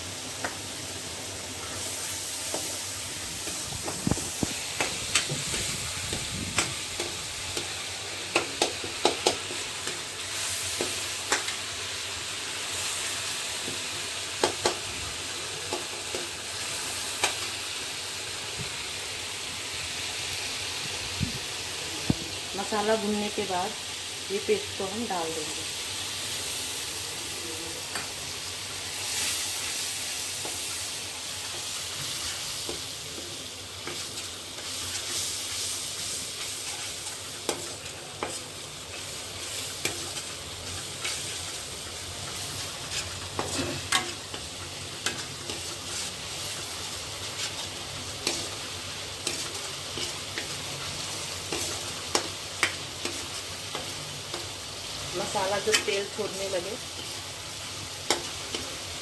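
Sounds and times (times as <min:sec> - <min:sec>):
paste sizzling in oil: 0:00.0 - 0:59.0
spoon scraping a pan: 0:42.8 - 0:46.2, 0:49.2 - 0:50.5.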